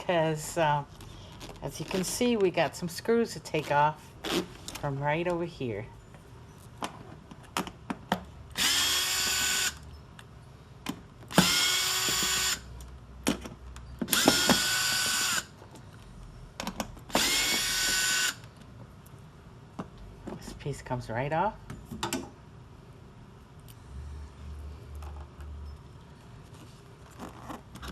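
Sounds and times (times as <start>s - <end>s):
power drill motor whine: 8.6s - 9.8s, 11.3s - 12.7s, 14.1s - 15.5s, 17.1s - 18.4s.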